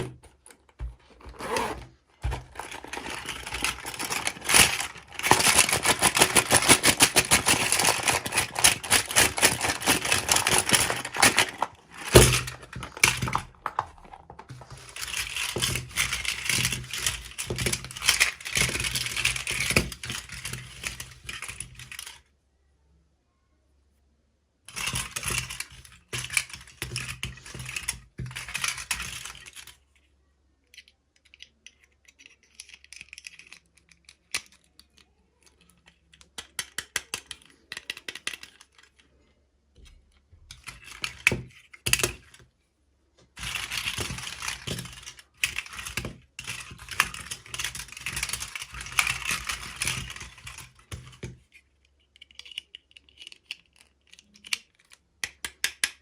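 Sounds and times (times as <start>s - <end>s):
plastic pieces clicking: 0.0s - 22.2s, 24.7s - 29.8s, 30.6s - 39.0s, 39.8s - 42.4s, 43.4s - 56.0s
plastic packaging crinkling: 1.0s - 16.2s.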